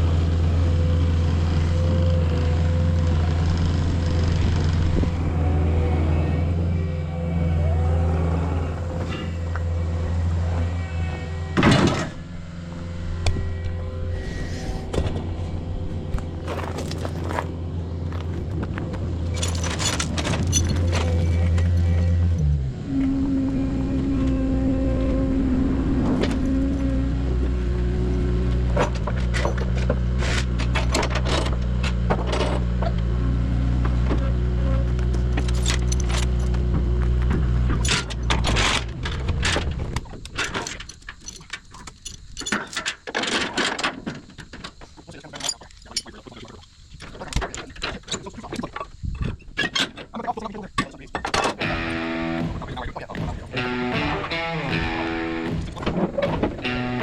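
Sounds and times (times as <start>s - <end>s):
diesel engine running: 0.0s - 39.0s, 51.5s - 57.0s
sharp metallic clanks and rattles: 19.2s - 22.1s, 51.2s - 57.0s
metal clanks and scrapes: 19.3s - 22.0s.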